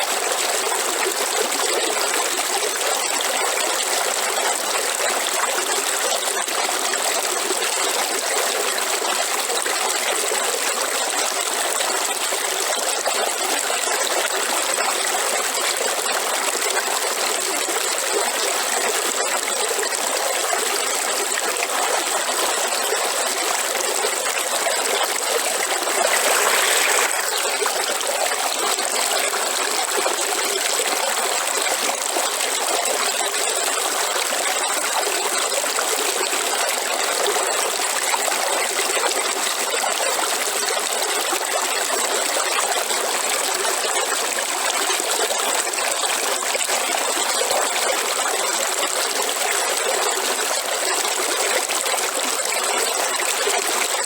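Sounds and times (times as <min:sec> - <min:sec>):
river water flowing: 0:16.7 - 0:54.0.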